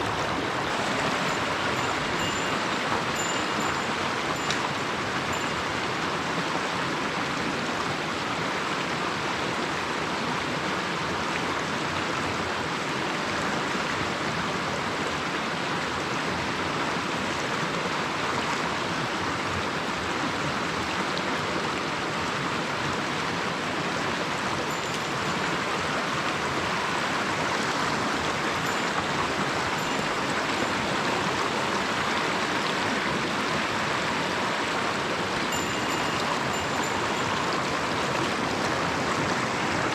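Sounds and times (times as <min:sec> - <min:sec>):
mountain stream flowing: 0:00.0 - 0:39.9.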